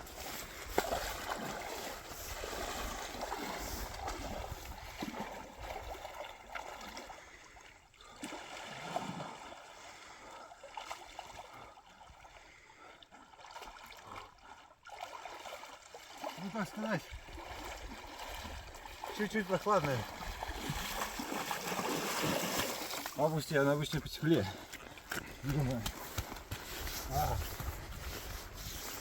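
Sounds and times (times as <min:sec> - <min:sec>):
person splashing in water: 0:00.0 - 0:07.4, 0:12.5 - 0:23.3.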